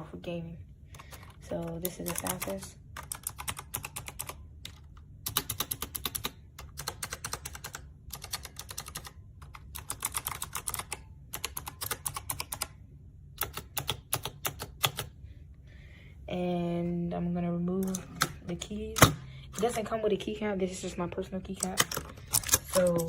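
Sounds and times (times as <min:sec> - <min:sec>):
fast typing on clicky keyboard: 0:01.0 - 0:12.8, 0:13.4 - 0:15.1, 0:21.6 - 0:23.0.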